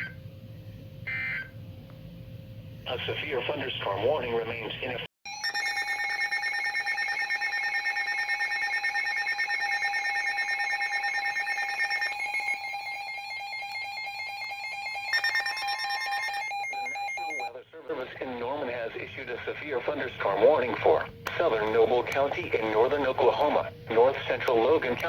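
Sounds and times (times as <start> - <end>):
weather radio alert alarm: 1.1 - 1.5, 4.4 - 25.0.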